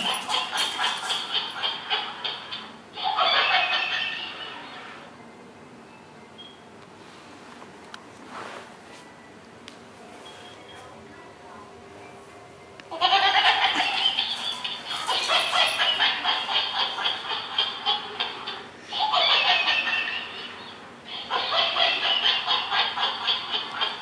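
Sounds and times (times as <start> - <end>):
toy monkey recorded laughter: 0.0 - 4.6, 12.9 - 24.0.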